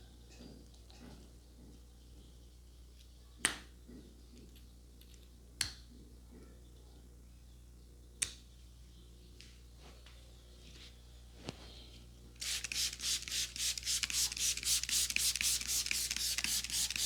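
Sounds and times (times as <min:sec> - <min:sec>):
faint steady hum: 0:00.0 - 0:17.0
hands snapping cracks: 0:05.6 - 0:05.8, 0:08.2 - 0:08.4.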